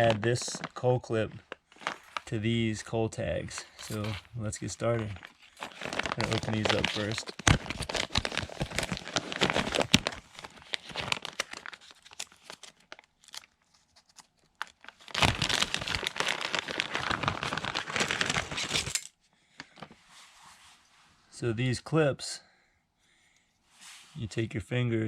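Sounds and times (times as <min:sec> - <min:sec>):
packaging crinkling and tearing: 0:00.0 - 0:02.3, 0:03.6 - 0:20.0.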